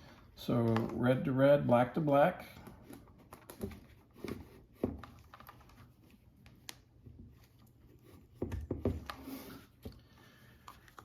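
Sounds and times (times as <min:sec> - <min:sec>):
wires and connectors clicking: 0:00.5 - 0:01.2.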